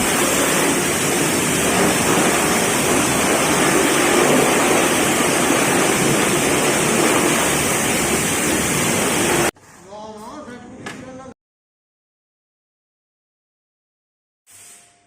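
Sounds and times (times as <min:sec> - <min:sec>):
pressure washer spraying water: 0:00.0 - 0:09.5.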